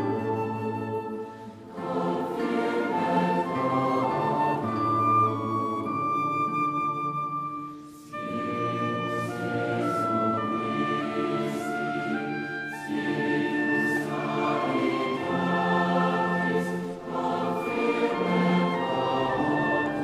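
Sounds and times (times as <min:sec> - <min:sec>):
choir singing sustained chords: 0:00.0 - 0:07.0, 0:07.7 - 0:20.0
orchestral accompaniment: 0:00.0 - 0:20.0.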